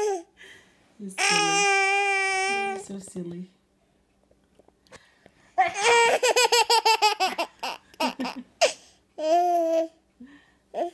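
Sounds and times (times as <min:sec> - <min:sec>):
baby laughing: 0:05.6 - 0:09.9.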